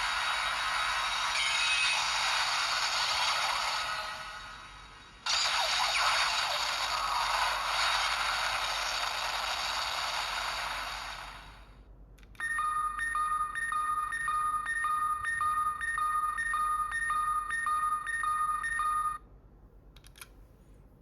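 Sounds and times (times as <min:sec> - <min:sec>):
toy speaker hissing blast: 0:05.3 - 0:11.5.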